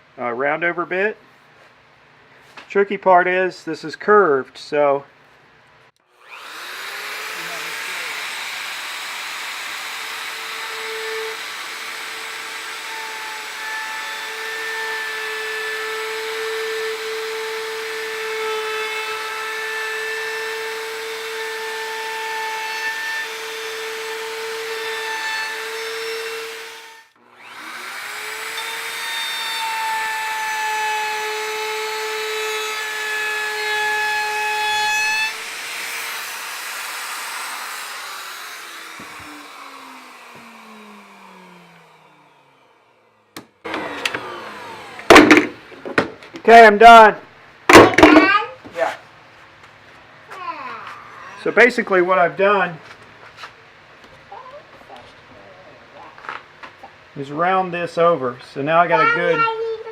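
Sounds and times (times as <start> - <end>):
router motor whine: 6.0 - 46.0
router cutting wood: 6.0 - 47.1, 47.7 - 48.4.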